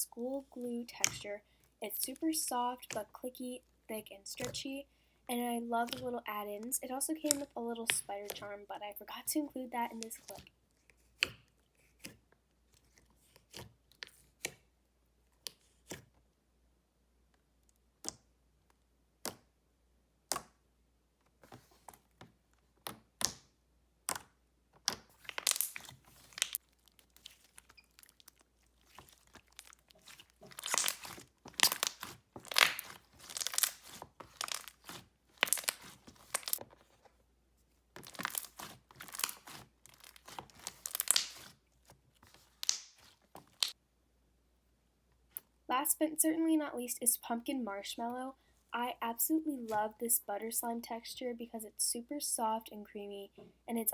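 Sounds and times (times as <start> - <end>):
slime clicking and popping: 7.2 - 8.4, 22.8 - 36.6, 38.0 - 41.6, 42.4 - 43.8.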